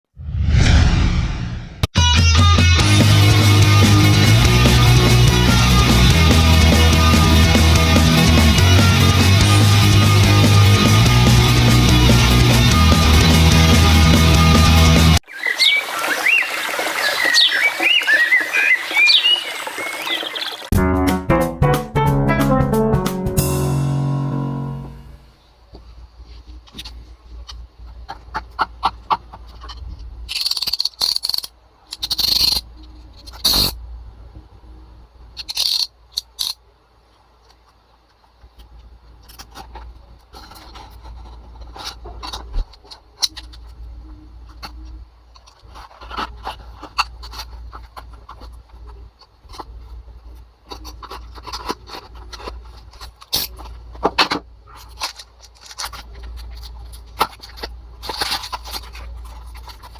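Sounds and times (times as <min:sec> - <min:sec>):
cardboard packaging rustling: 0:45.4 - 0:59.9.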